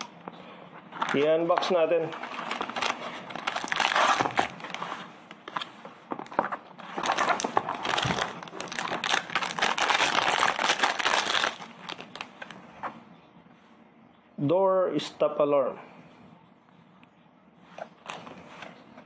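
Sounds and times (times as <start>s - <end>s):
packaging crinkling and rustling: 0.9s - 12.6s.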